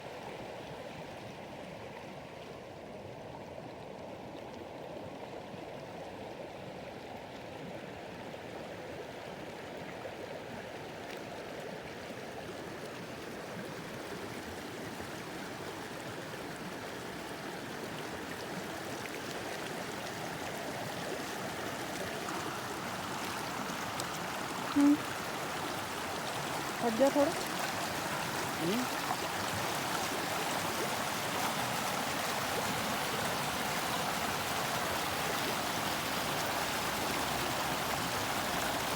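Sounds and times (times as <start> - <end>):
creek water flowing over rocks: 0.0 - 38.9.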